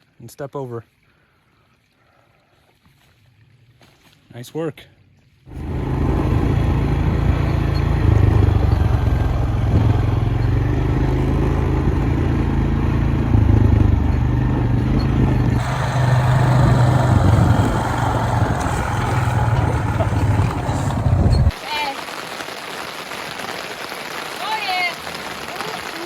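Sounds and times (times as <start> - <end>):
vehicle engine running steadily: 5.5 - 21.5.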